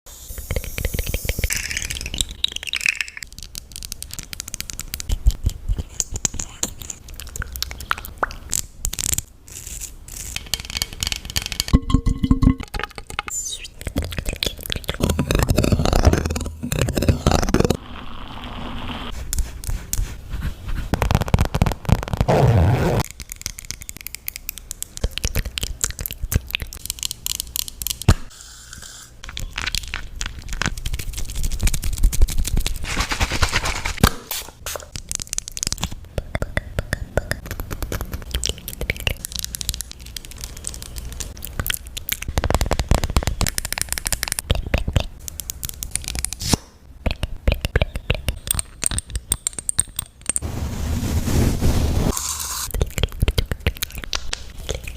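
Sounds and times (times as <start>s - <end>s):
small clicks and pops: 0.7s - 6.4s, 37.2s - 50.4s
slime squelching: 12.2s - 17.8s, 52.2s - 54.9s.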